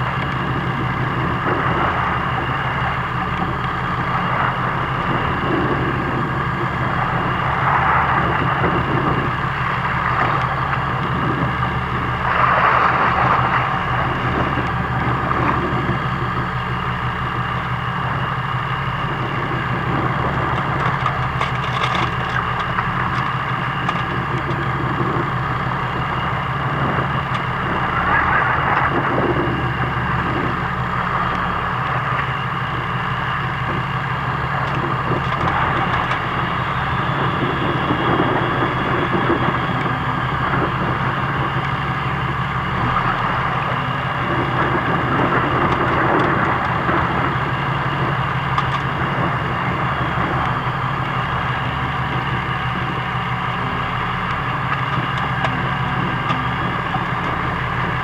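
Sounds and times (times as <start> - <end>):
boat engine humming: 0.0 - 58.0.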